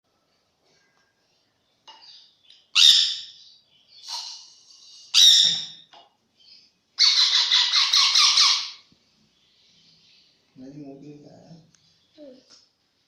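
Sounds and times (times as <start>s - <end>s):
parrot chick chirps: 2.0s - 5.9s, 7.0s - 8.9s
parrot chick harsh squawks: 2.7s - 3.4s, 5.1s - 5.8s, 7.0s - 8.9s.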